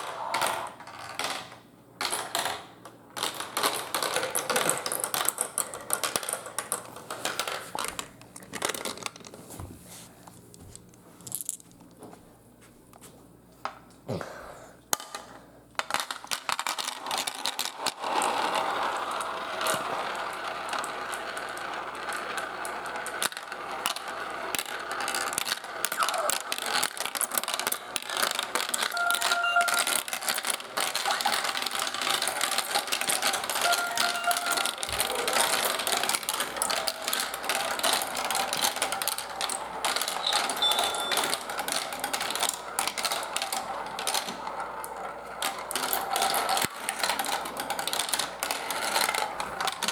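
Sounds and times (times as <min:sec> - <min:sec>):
marbles rattling down a marble run: 0:03.2 - 0:09.3, 0:15.8 - 0:49.9
brief ringing tones: 0:28.9 - 0:30.0, 0:33.6 - 0:34.6.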